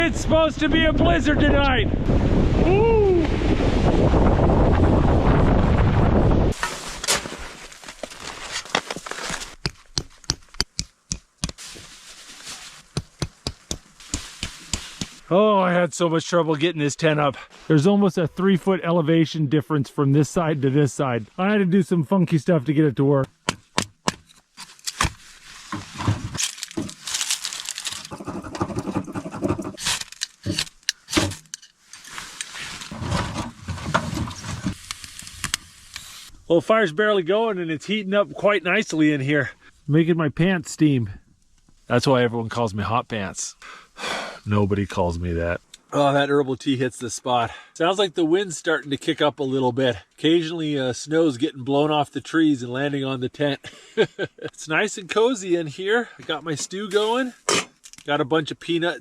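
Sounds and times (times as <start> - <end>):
wind buffeting microphone: 0.0 - 6.6
rustling: 6.6 - 15.3, 24.2 - 36.4
sharp crackles and clicks: 34.8 - 36.3.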